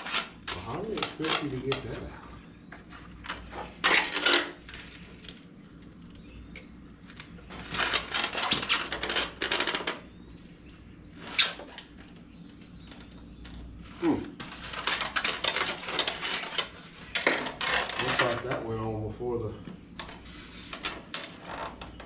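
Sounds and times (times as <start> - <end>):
packing material rustling: 7.2 - 10.0, 14.0 - 18.5.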